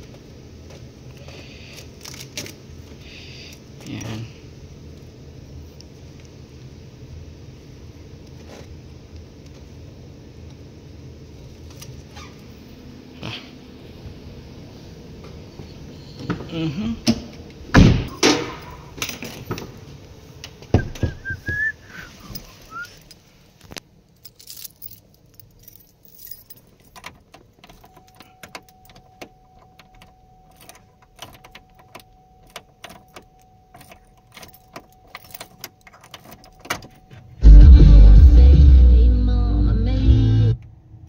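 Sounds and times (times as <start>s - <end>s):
metallic clicks and jingles: 24.1s - 37.2s
faint steady tone: 24.1s - 37.5s.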